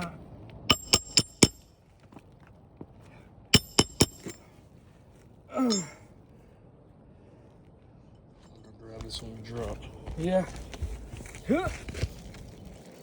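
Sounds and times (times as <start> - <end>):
hammer striking steel pry bar: 0.7 - 1.6, 3.6 - 4.4, 5.6 - 6.0.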